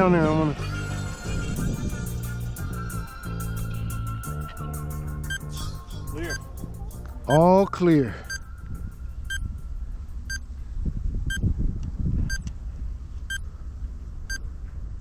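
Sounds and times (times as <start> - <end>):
steady low rumble: 0.6 - 15.0
short electronic beeps: 3.9 - 9.6.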